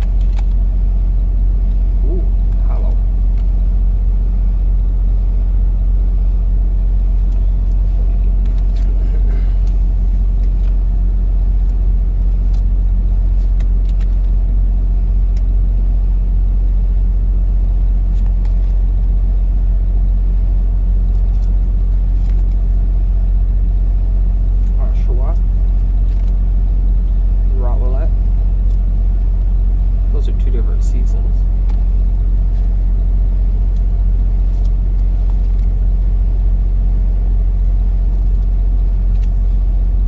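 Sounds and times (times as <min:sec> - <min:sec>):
low vehicle rumble: 0:00.0 - 0:40.0.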